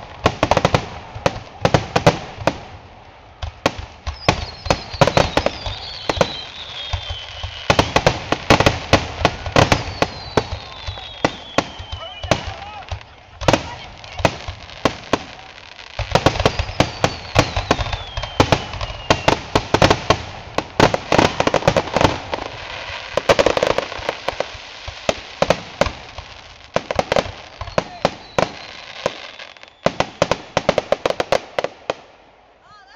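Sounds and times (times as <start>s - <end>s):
fireworks bangs: 0.0s - 32.2s
fireworks crackling: 0.0s - 32.9s
falling whistles: 4.1s - 8.0s, 9.5s - 12.7s, 16.2s - 19.5s, 27.6s - 30.3s.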